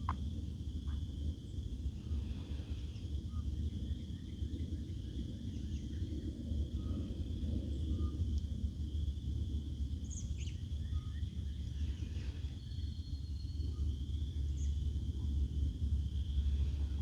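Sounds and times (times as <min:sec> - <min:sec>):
low rumble: 0:14.7 - 0:17.0.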